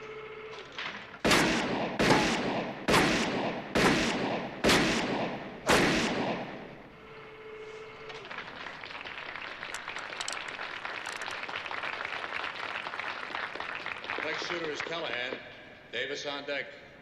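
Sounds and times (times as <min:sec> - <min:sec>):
revolver shots with echo: 0:01.2 - 0:06.8.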